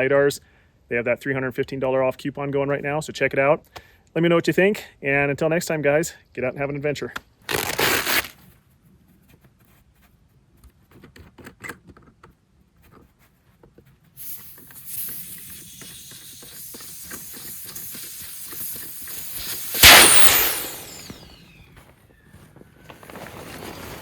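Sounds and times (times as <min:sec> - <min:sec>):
air hissing out of a valve: 0:14.2 - 0:21.4.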